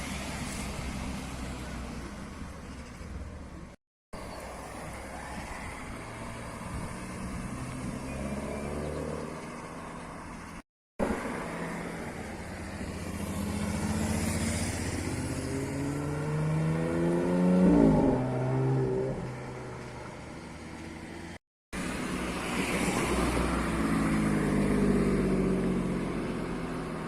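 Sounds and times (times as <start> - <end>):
car engine accelerating: 12.7 - 21.2.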